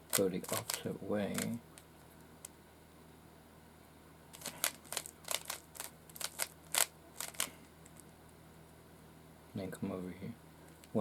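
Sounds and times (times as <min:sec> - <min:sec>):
puzzle cube plastic clicks: 0:00.1 - 0:01.9, 0:04.3 - 0:08.1.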